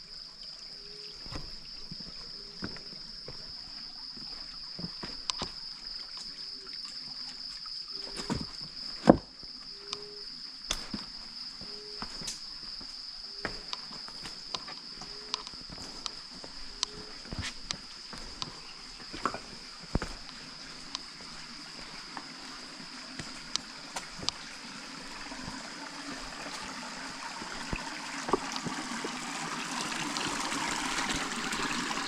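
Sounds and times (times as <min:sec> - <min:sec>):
high-pitched insect drone: 0:00.0 - 0:32.0
footsteps on rock: 0:01.2 - 0:03.6, 0:04.2 - 0:05.6, 0:08.0 - 0:09.3, 0:10.7 - 0:28.9.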